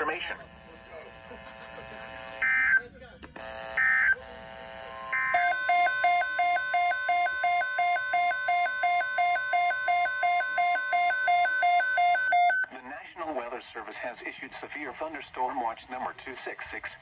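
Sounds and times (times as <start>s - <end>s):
two-tone beeping alarm: 2.4s - 2.8s, 3.7s - 4.2s, 5.1s - 12.7s
data bursts: 5.1s - 12.7s.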